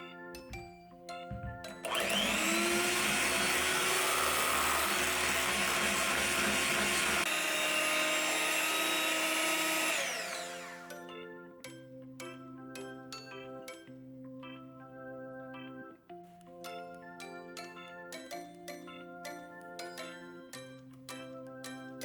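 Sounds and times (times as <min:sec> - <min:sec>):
electric hand mixer whine: 0:01.4 - 0:11.1.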